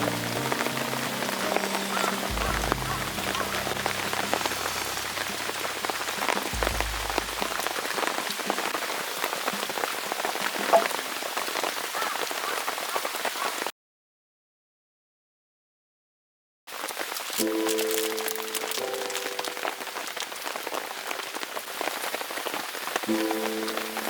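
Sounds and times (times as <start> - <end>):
heavy rain: 0.0 - 13.7, 16.7 - 24.0
low rumble: 2.3 - 7.9.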